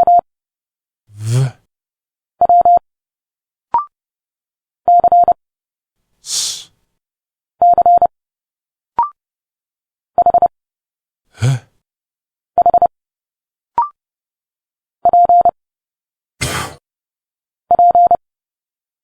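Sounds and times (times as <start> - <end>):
short spoken speech sounds: 1.2 - 1.6, 6.3 - 6.7, 16.4 - 16.8
morse code beeps: 17.7 - 18.2.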